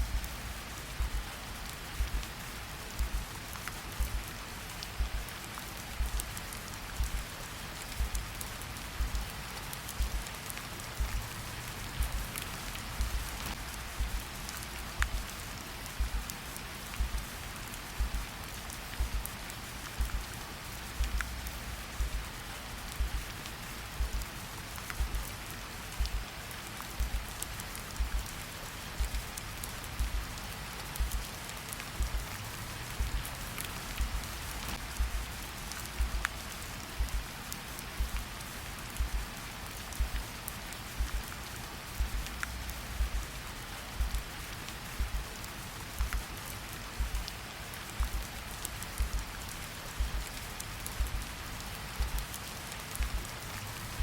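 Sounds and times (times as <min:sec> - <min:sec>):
slow heartbeat thumps: 0:00.0 - 0:01.3, 0:01.9 - 0:02.3, 0:02.9 - 0:03.3, 0:03.9 - 0:04.3, 0:05.0 - 0:05.3, 0:05.9 - 0:09.3, 0:09.9 - 0:10.3, 0:11.0 - 0:16.3, 0:16.9 - 0:17.3, 0:18.0 - 0:18.3, 0:19.0 - 0:19.3, 0:20.0 - 0:20.3, 0:21.0 - 0:22.3, 0:22.9 - 0:23.3, 0:24.0 - 0:24.3, 0:25.0 - 0:25.3, 0:26.0 - 0:26.3, 0:27.0 - 0:27.3, 0:28.0 - 0:28.3, 0:29.0 - 0:29.3, 0:30.0 - 0:30.3, 0:31.0 - 0:31.3, 0:32.0 - 0:32.3, 0:33.0 - 0:33.4, 0:34.0 - 0:37.3, 0:38.0 - 0:38.3, 0:39.0 - 0:39.4, 0:40.0 - 0:40.3, 0:41.0 - 0:41.3, 0:42.0 - 0:43.4, 0:44.0 - 0:45.3, 0:46.0 - 0:46.3, 0:47.0 - 0:47.3, 0:48.0 - 0:48.4, 0:49.0 - 0:52.4, 0:53.0 - 0:53.3
steady rain falling: 0:00.0 - 0:54.0.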